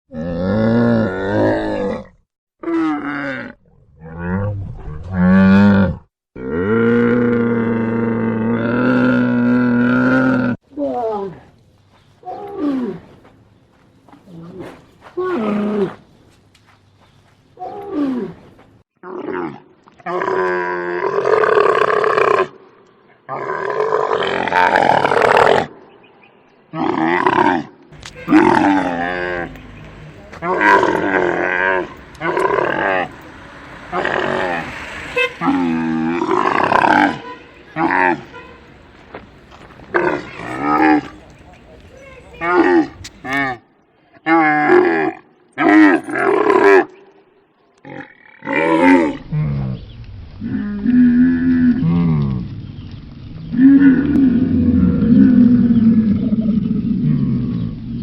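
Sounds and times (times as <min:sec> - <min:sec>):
camel roaring: 0:00.1 - 0:11.4, 0:17.6 - 0:22.6, 0:23.3 - 0:25.8, 0:26.7 - 0:43.6, 0:53.5 - 0:57.6
camel bellowing: 0:26.7 - 0:43.6.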